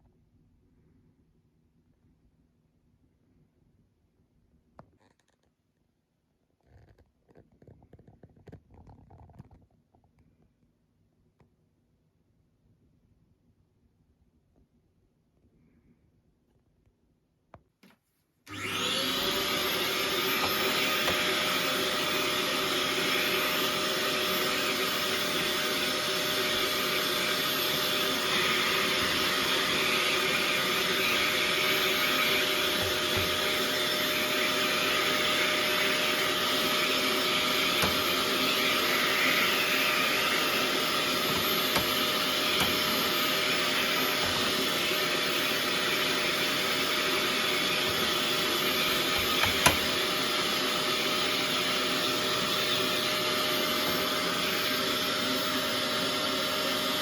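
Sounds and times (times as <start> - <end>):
vacuum cleaner motor whining: 18.5 - 57.0.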